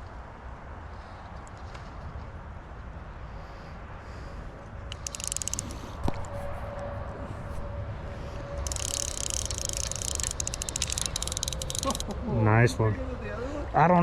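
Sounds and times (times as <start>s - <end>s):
fishing reel drag ratcheting: 4.9s - 6.6s, 8.6s - 12.1s.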